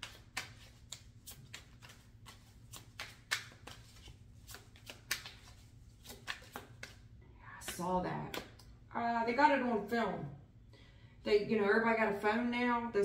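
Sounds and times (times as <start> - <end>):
cards being shuffled: 0.0 - 8.6.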